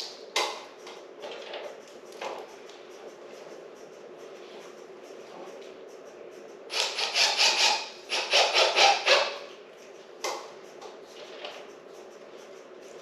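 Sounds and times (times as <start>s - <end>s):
hand tool scraping on wood: 6.7s - 9.4s.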